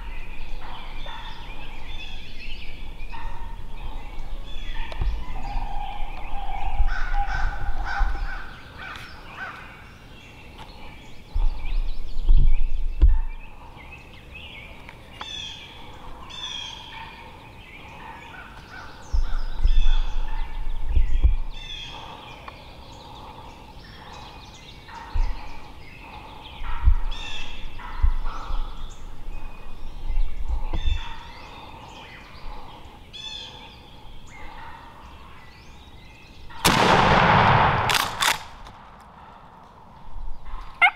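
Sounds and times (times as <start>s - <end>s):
low rumbles on microphone: 11.2s - 13.7s, 19.1s - 21.7s, 26.4s - 31.1s.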